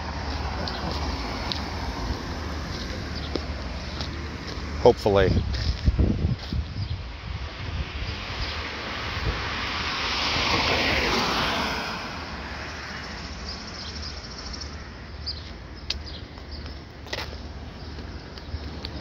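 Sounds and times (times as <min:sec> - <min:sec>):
vehicle passing by: 0:00.0 - 0:05.9, 0:07.2 - 0:15.2
steady low rumble: 0:00.0 - 0:09.9.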